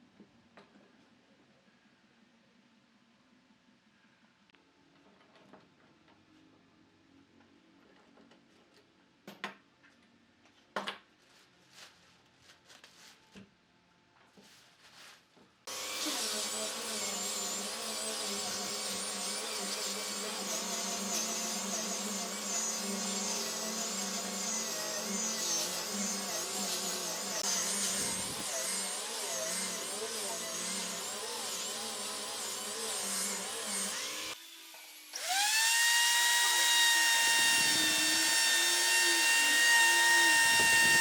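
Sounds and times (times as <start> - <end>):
woodworking power tool whining: 15.7 - 41.0.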